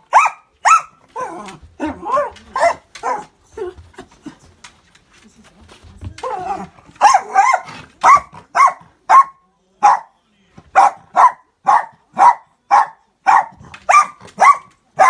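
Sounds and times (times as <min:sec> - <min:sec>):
dog barking: 0:00.0 - 0:01.4, 0:02.1 - 0:03.3, 0:07.0 - 0:15.0.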